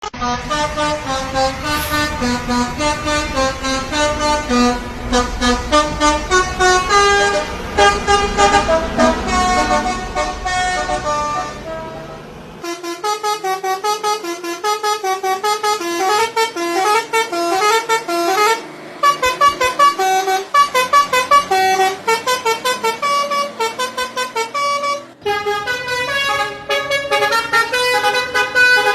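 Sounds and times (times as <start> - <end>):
multi-tone bus horn melody: 0.0 - 28.9
low rumble: 1.5 - 11.2.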